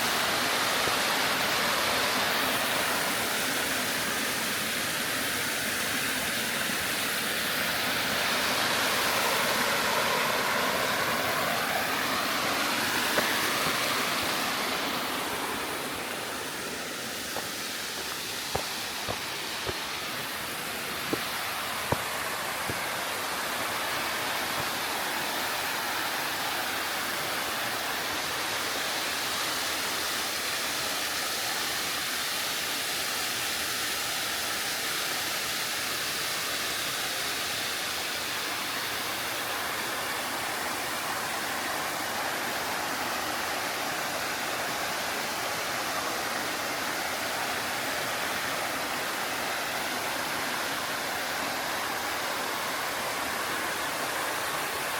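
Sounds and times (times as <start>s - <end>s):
stream rushing over rocks: 0.0s - 54.9s.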